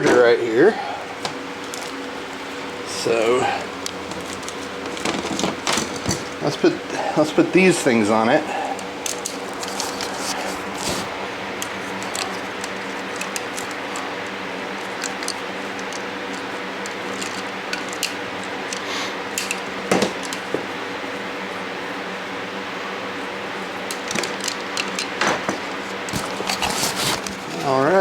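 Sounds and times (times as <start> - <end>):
steady hum: 0.0 - 28.0
clicks of charger clamps: 14.8 - 20.6.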